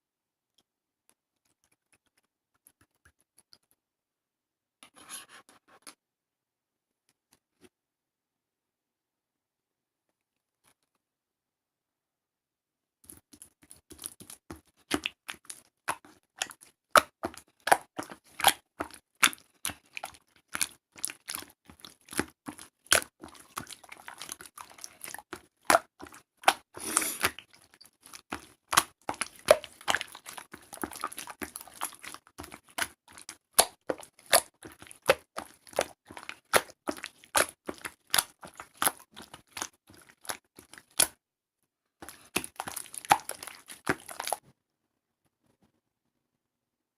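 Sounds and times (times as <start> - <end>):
slime squished by hand: 13.1 - 41.2, 42.0 - 44.4.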